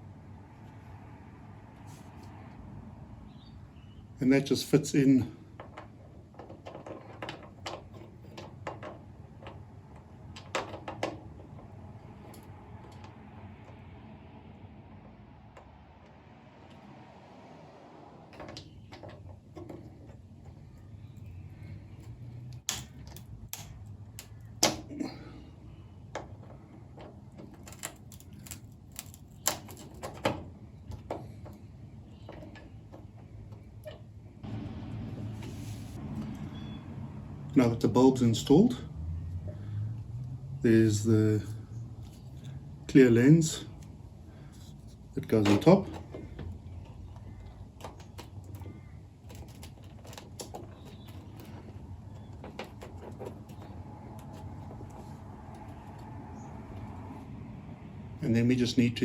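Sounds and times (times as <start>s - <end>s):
small parts clicking and tapping: 18.4s - 24.9s, 26.1s - 34.0s, 43.8s - 57.2s.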